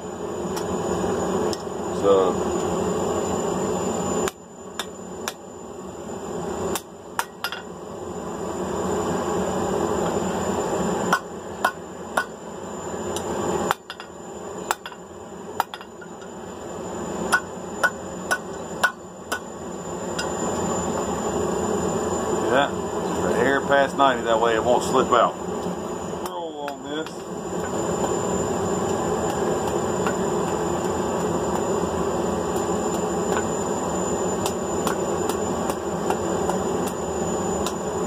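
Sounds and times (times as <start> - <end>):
hammer striking steel on anvil: 6.7 - 7.7, 11.1 - 12.4, 13.7 - 14.1, 14.7 - 15.0, 15.6 - 16.3, 17.3 - 19.5.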